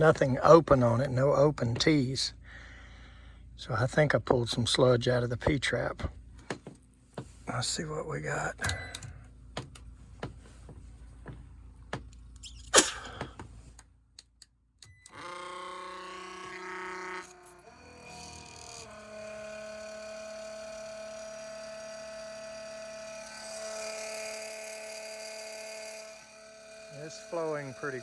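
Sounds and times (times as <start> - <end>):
small pump motor whine: 14.9 - 28.0.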